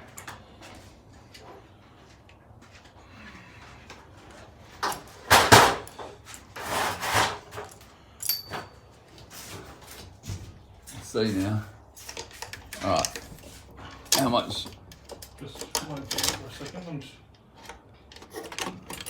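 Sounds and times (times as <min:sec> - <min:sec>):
metal chain rattling and scraping: 0:04.7 - 0:09.8, 0:11.2 - 0:16.8, 0:17.5 - 0:19.0.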